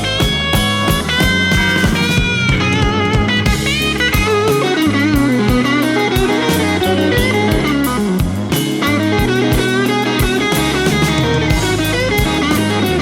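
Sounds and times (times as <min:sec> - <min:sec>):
bass and drums: 0:00.0 - 0:13.0
electric guitar lead bending notes: 0:00.0 - 0:13.0.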